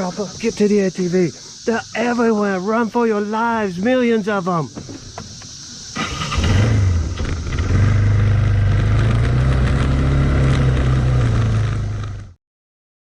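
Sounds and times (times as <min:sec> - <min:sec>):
cicada chorus: 0:00.0 - 0:12.0
atv engine running: 0:06.0 - 0:12.4.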